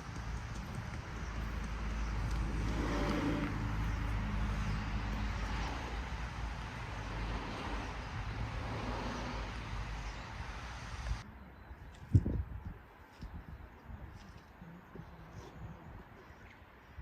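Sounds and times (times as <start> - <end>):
road noise hiss: 0.0 - 11.2
vehicle engine drone: 0.0 - 11.2.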